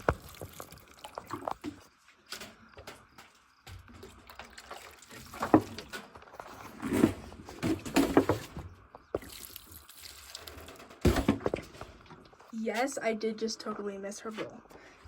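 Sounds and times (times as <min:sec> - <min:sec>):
water splashing and spattering: 0:00.0 - 0:01.9, 0:03.7 - 0:06.6, 0:09.2 - 0:12.1.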